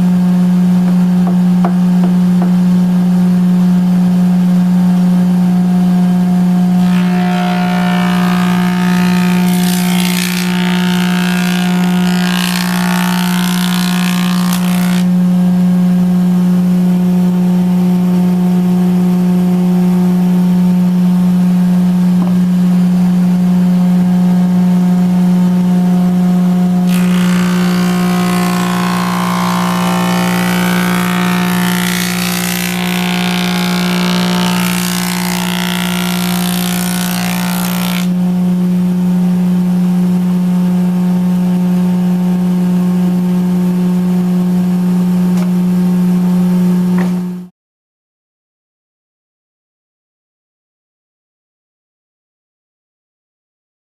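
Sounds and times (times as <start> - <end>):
jointer humming: 6.8 - 15.1, 26.9 - 38.1
wood planing noise: 6.8 - 15.1, 26.9 - 38.1.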